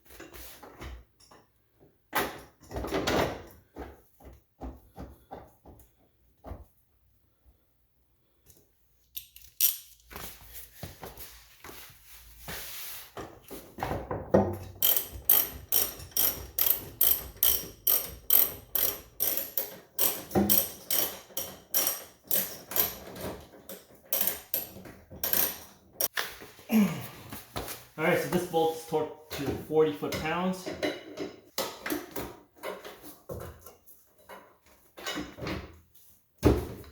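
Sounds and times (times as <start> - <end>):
socket ratchet strokes: 14.8 - 23.2, 24.1 - 25.7.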